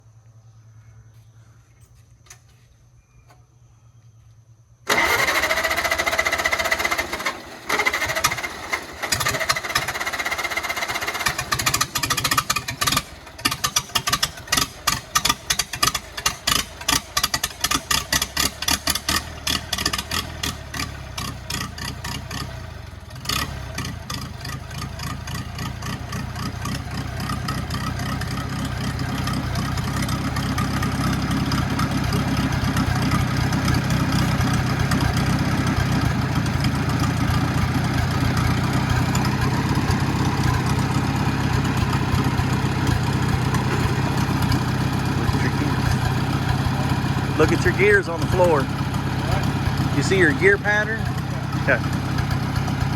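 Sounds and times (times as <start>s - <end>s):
starter motor cranking whine: 4.9s - 22.5s, 29.2s - 52.9s
tractor engine running unevenly: 4.9s - 52.9s.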